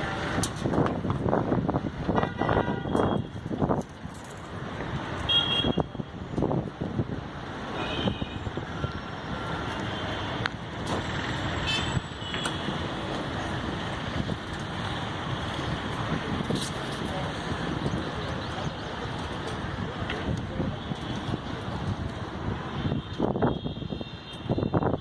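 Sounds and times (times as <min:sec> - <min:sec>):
motor vehicle rumble: 0:00.0 - 0:02.2, 0:02.8 - 0:25.0.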